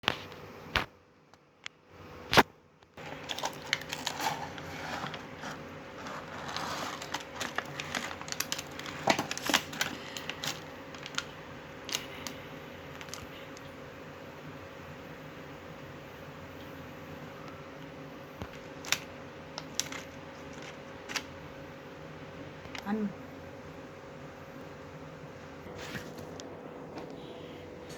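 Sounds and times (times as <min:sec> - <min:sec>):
faint steady hum: 0:00.0 - 0:27.9
plastic toy packaging rustling: 0:03.0 - 0:13.6, 0:18.4 - 0:21.3.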